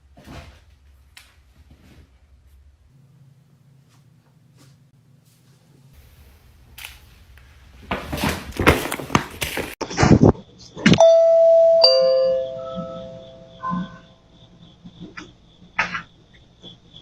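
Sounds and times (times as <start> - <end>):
loud rustling and knocking: 7.8 - 9.8
doorbell chime ding-dong: 11.0 - 14.0.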